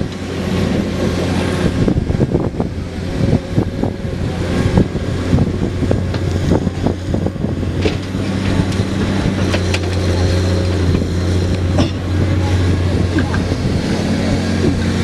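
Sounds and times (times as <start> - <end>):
excavator diesel engine running: 0.0 - 15.0
knocks and clatter: 7.7 - 12.2.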